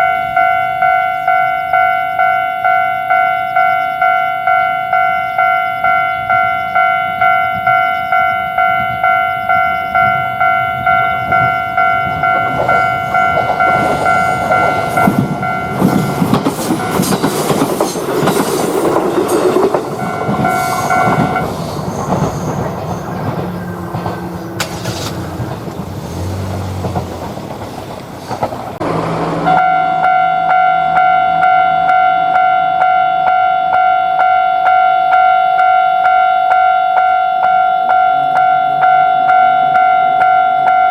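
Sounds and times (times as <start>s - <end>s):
level-crossing warning bell: 0.0s - 26.4s, 28.8s - 40.9s
train wheels clacking over rail joints: 11.2s - 29.3s.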